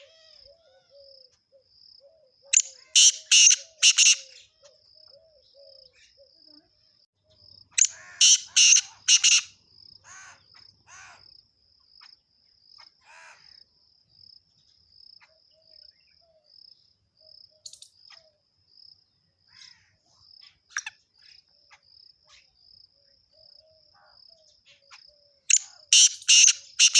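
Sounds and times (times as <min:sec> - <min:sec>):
songbirds chirping: 0:00.0 - 0:12.8, 0:13.6 - 0:26.9
repeating high-pitched chirp: 0:02.5 - 0:04.4, 0:07.8 - 0:09.5, 0:17.6 - 0:18.0, 0:25.5 - 0:26.9.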